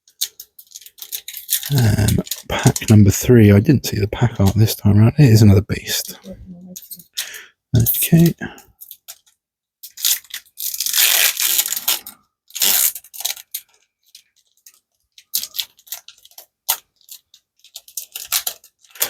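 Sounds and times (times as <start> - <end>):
foil pack crinkling and tearing: 0.1 - 2.9, 8.8 - 19.0
small clicks and ticks: 12.6 - 19.0.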